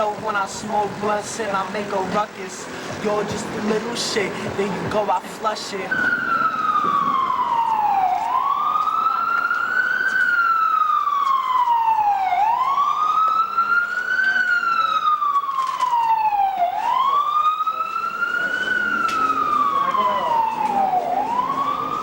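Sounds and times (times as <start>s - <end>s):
emergency vehicle siren wailing: 5.8s - 22.0s.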